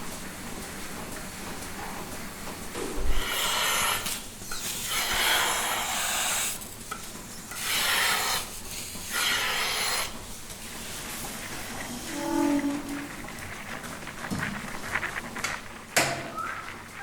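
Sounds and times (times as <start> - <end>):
rasping scraping strokes: 11.0 - 14.2.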